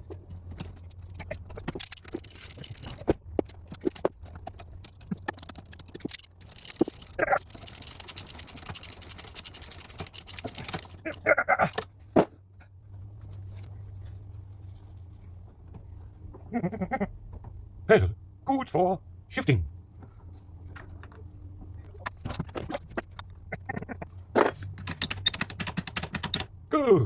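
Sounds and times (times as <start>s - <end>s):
metallic clicks and scrapes: 0.0s - 15.4s, 20.2s - 26.5s
ratchet clicking: 0.6s - 11.9s, 24.8s - 26.5s.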